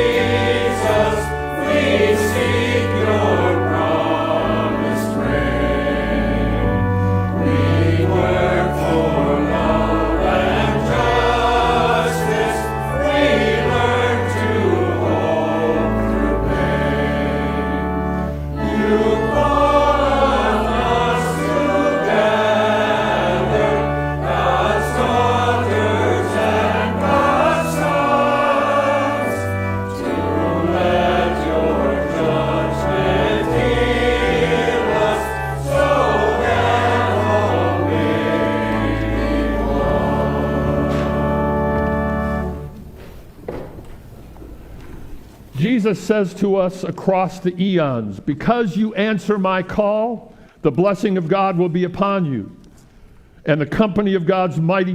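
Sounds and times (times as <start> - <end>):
choir singing a hymn: 0.0 - 43.8
instrumental accompaniment: 0.0 - 45.6.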